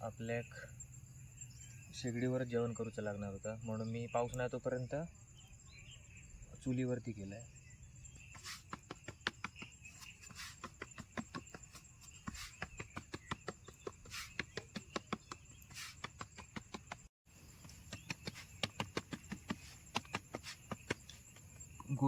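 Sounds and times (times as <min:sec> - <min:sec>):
high insect trill: 0:00.0 - 0:22.0
sharp taps and clicks: 0:08.6 - 0:21.6.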